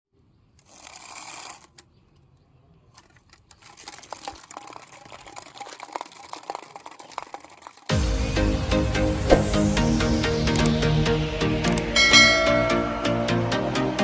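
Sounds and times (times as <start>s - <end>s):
small sharp clicks and crackles: 0.5s - 7.9s.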